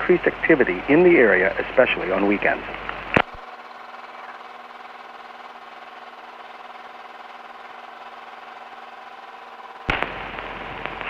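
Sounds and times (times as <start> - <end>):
small aircraft engine and propeller drone: 0.0 - 11.0
radio click: 2.7 - 3.4.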